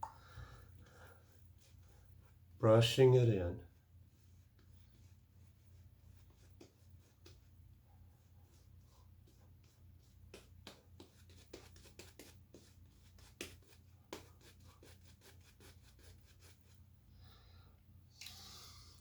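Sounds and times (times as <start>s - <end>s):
shaving brush rubbing lather: 8.2s - 16.8s.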